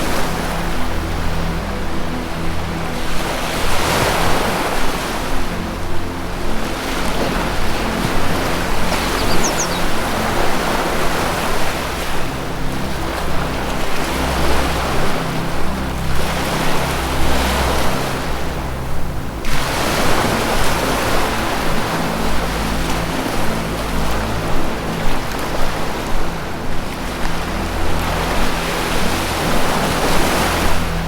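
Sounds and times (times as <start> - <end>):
low music drone: 0.0 - 31.0
ocean surf washing: 0.0 - 31.0
bird chirp: 8.8 - 10.2.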